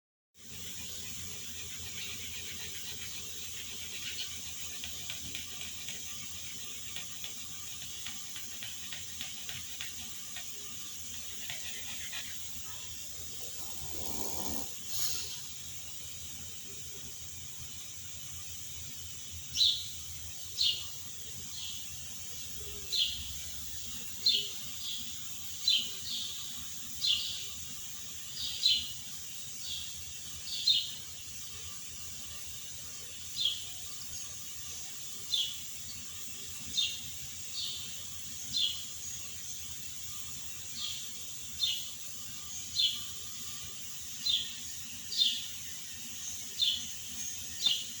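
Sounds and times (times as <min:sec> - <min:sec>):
dogs snoring with whistling squeaks: 0:09.1 - 0:15.6.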